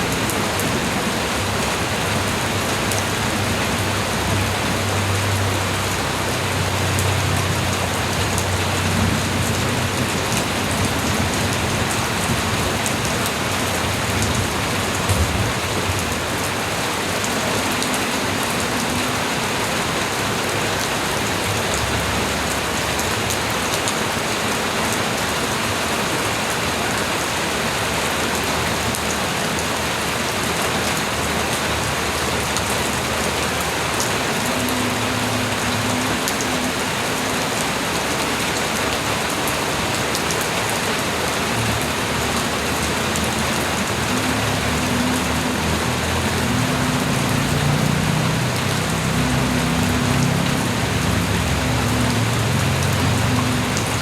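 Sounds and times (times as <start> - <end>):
light rain pattering: 0.0 - 54.0.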